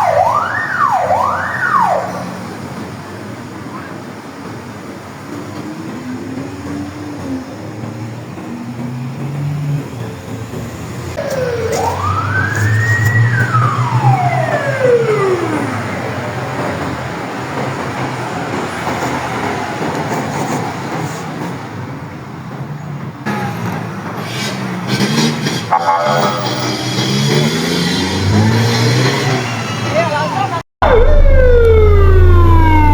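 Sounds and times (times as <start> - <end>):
ambulance siren wailing: 0.0 - 4.5, 11.1 - 18.6, 25.6 - 32.9
engine and traffic rumble: 0.0 - 32.9.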